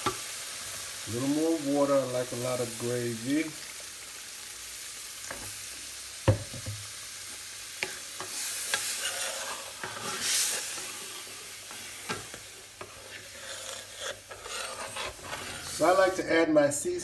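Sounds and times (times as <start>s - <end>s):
gravy sizzling in a skillet: 0.0s - 17.0s
spoon stirring and scraping: 7.8s - 16.2s.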